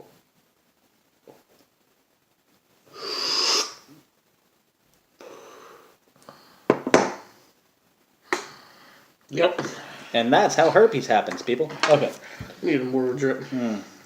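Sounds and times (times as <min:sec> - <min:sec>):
sharp breath bursts: 0:02.9 - 0:04.0, 0:08.3 - 0:10.2.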